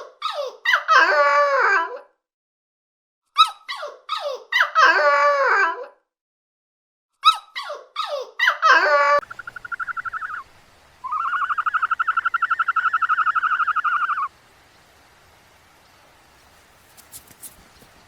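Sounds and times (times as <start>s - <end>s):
animal whimpering cries: 3.7s - 6.0s, 7.3s - 9.3s
high pulsed animal trills: 9.2s - 14.3s.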